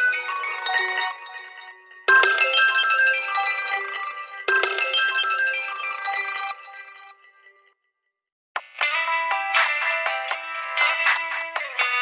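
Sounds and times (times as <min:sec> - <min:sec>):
phone ringtone melody: 0:00.0 - 0:07.4, 0:08.8 - 0:11.2.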